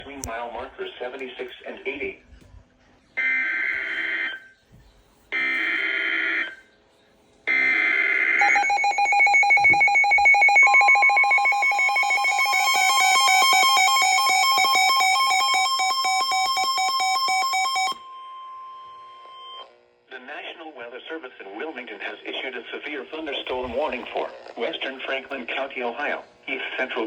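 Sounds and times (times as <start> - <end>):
steady warning alarm tone: 5.3 - 6.6, 7.5 - 19.7
screeching data tones: 7.5 - 19.7
rapidly pulsing alert beep: 8.4 - 18.5.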